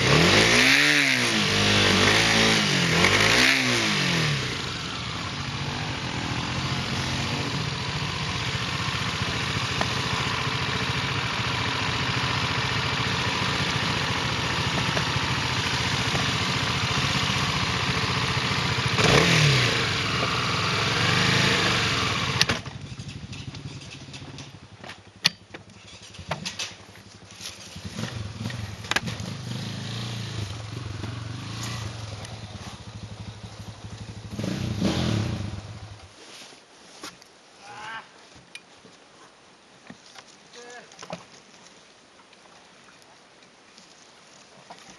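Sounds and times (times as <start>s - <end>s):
motorcycle engine revving: 0.0s - 24.6s, 27.6s - 36.1s
wind and road noise: 0.0s - 37.5s
knocks and clatter: 22.4s - 26.9s.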